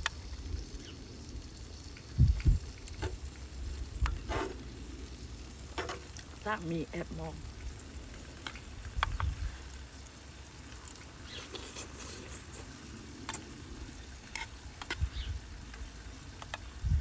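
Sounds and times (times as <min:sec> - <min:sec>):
wind rumble on microphone: 0:00.0 - 0:05.7, 0:07.3 - 0:09.7, 0:13.6 - 0:17.0
food sizzling on a grill: 0:00.0 - 0:17.0.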